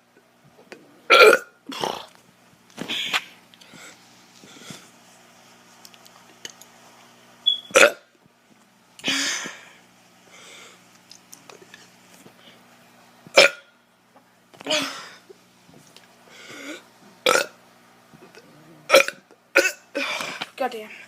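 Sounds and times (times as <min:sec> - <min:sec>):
teenager burping: 0:01.1 - 0:02.2, 0:07.7 - 0:08.1, 0:16.6 - 0:17.6, 0:18.3 - 0:20.2.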